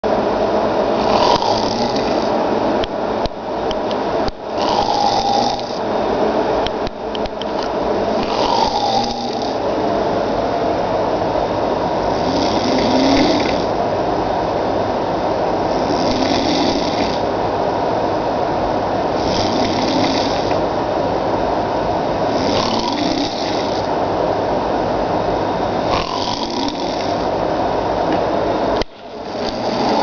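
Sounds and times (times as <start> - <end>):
man snoring: 1.0 - 2.4, 4.5 - 5.8, 8.1 - 9.6, 12.0 - 13.8, 15.6 - 17.3, 19.2 - 20.6, 22.3 - 23.9, 25.8 - 27.3, 29.2 - 30.0.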